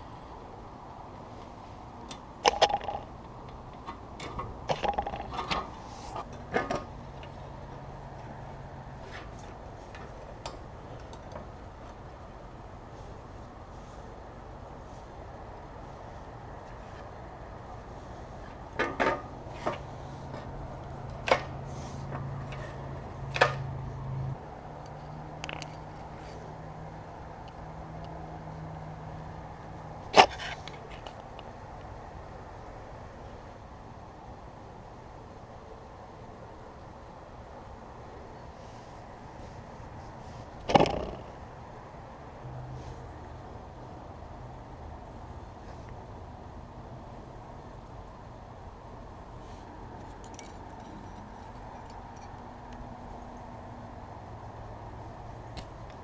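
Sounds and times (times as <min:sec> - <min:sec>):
clicks and taps of parts: 0:02.1 - 0:07.4, 0:24.9 - 0:26.1
tools clicking and clinking on metal: 0:50.0 - 0:52.4.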